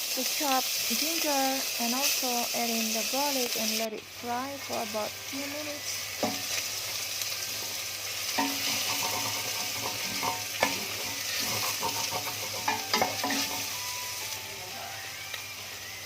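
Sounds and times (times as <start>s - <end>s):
ginger and garlic sizzling: 0.0s - 16.0s
utensil knocking against pan: 8.4s - 13.8s.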